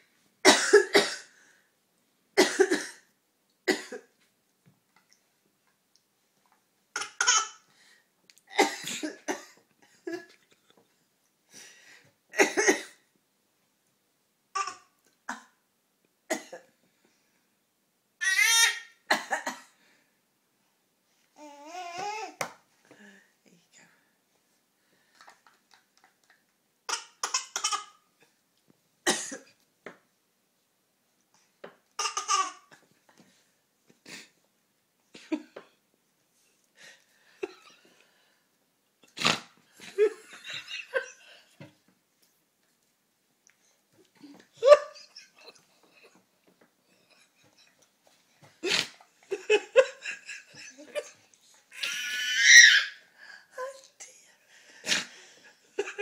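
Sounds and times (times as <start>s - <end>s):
toddler coughing: 0.5s - 1.3s, 7.0s - 7.6s, 26.9s - 28.0s
woman coughing: 0.5s - 1.3s, 2.4s - 3.0s, 8.5s - 9.6s, 12.4s - 13.0s
laughter: 39.8s - 41.2s, 49.3s - 51.2s.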